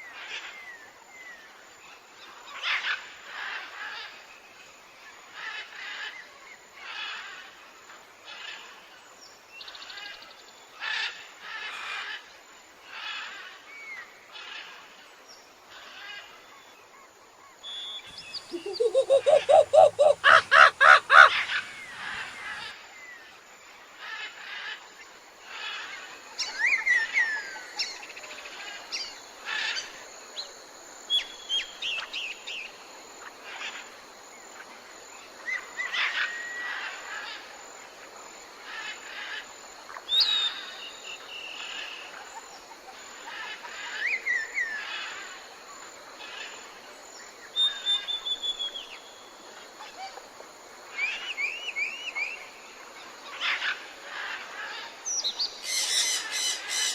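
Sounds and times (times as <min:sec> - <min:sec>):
high chirps and whistled notes: 0:18.4 - 0:21.3.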